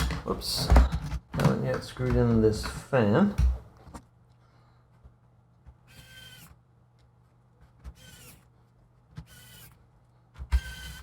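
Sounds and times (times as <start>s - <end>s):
electric screwdriver whirring: 5.9s - 6.6s, 7.9s - 8.5s, 9.2s - 9.8s, 10.4s - 11.0s.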